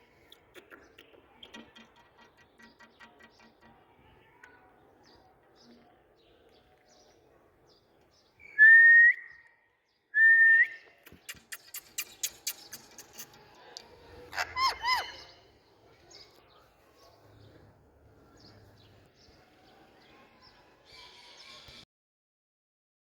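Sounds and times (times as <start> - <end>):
parrot chirps: 14.3 - 15.4.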